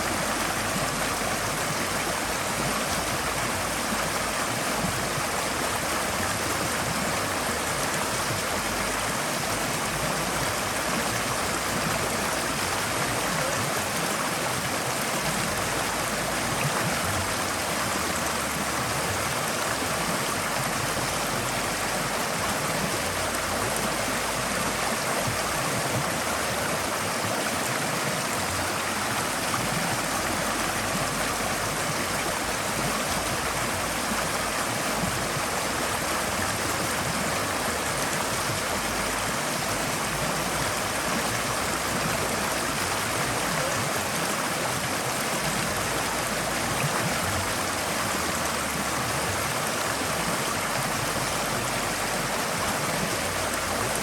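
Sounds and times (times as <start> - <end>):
stream babbling over stones: 0.0 - 54.0.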